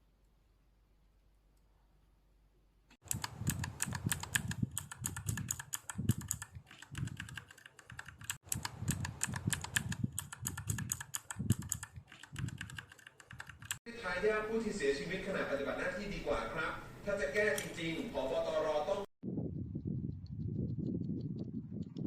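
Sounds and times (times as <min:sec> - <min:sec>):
mechanical keyboard typing: 0:03.0 - 0:13.8.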